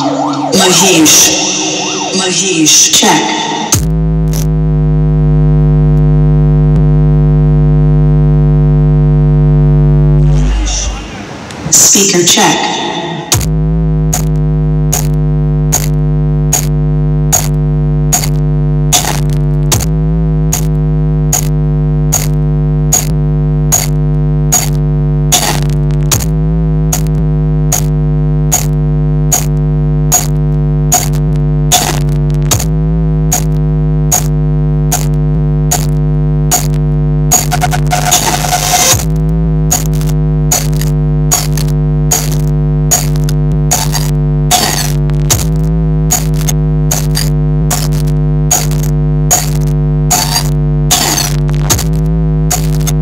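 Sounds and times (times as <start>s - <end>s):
electronic drone from loudspeakers: 0.0s - 53.0s
sharp clicks in even beat: 14.1s - 18.4s, 20.5s - 26.3s, 26.9s - 27.9s, 28.5s - 38.2s, 38.9s - 53.0s.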